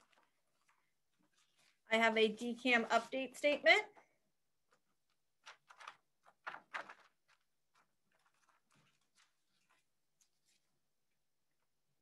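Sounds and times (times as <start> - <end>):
paper rustling: 0.0 - 11.2.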